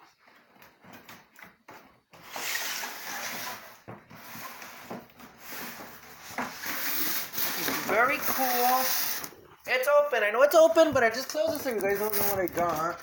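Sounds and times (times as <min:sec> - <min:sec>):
handling noise rustling: 0:03.2 - 0:13.0.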